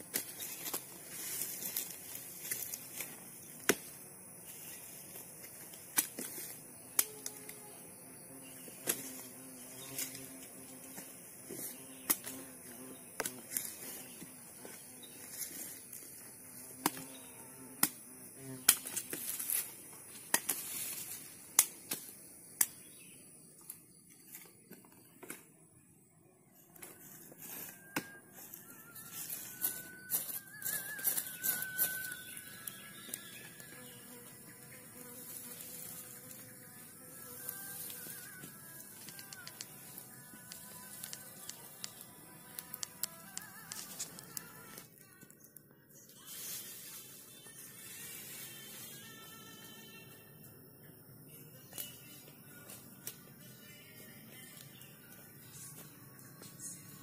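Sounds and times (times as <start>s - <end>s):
thin whistle-like tone: 27.4s - 33.4s
faint high hiss: 27.4s - 44.8s.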